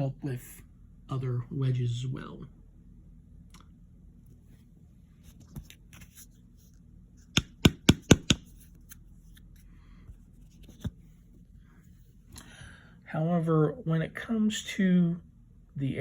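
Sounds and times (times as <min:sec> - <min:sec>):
hard tools knocking on surface: 0:07.4 - 0:08.4.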